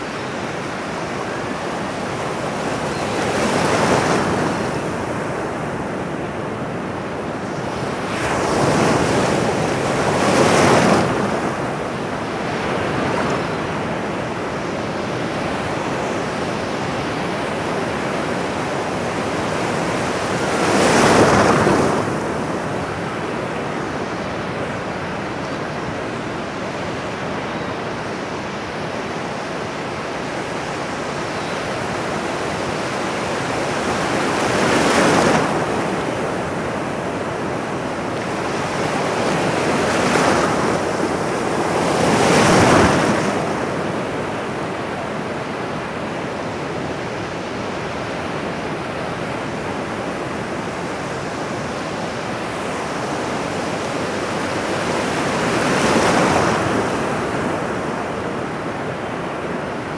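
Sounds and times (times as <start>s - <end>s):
ocean waves breaking: 31.8s - 46.1s.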